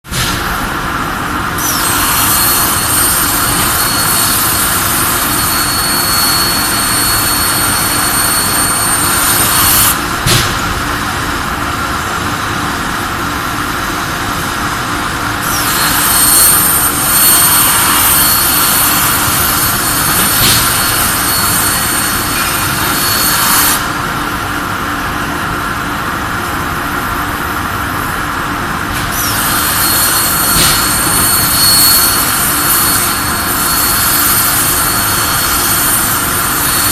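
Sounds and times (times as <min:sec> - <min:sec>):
machine-shop drone: 0:00.0 - 0:36.9
plasma cutter hissing and whistling: 0:01.5 - 0:10.4, 0:15.2 - 0:24.3, 0:29.0 - 0:36.9.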